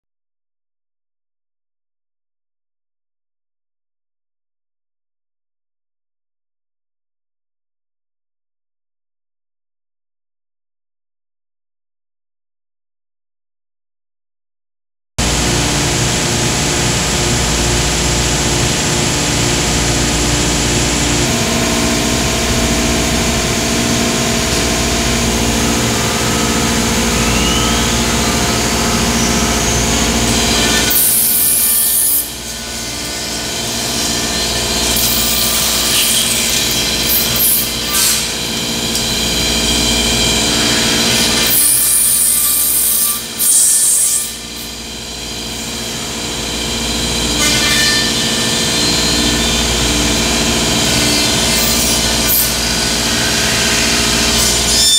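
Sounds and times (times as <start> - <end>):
cnc router cutting: 15.2 - 54.9.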